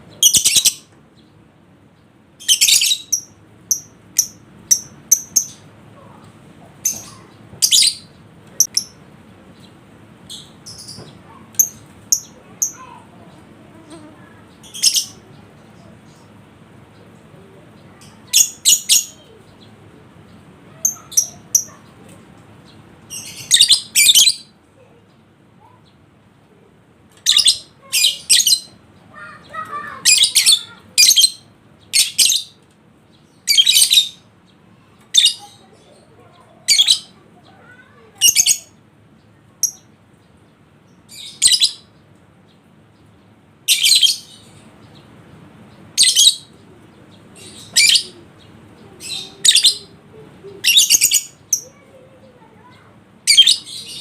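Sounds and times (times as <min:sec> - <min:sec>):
lovebird chirping: 0:00.0 - 0:00.9, 0:02.4 - 0:16.3, 0:22.6 - 0:24.6, 0:27.2 - 0:32.6, 0:40.9 - 0:41.9, 0:43.7 - 0:45.2, 0:45.8 - 0:51.8, 0:52.7 - 0:54.0.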